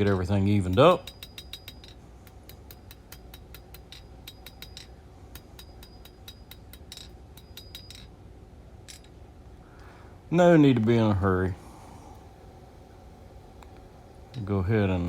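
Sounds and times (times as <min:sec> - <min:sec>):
hammer striking steel on anvil: 0:00.0 - 0:08.1.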